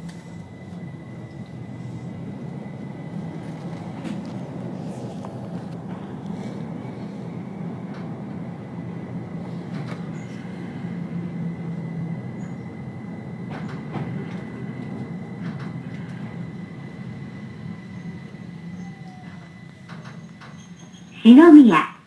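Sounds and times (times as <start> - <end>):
thin steady whine: 0.0 - 9.6
train wheels rumbling: 0.0 - 21.9.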